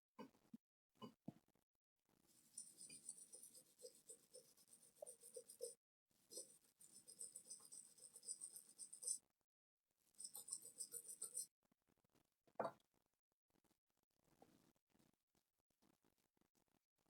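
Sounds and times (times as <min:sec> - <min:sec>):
scrubbing circuit board: 0:10.2 - 0:11.4.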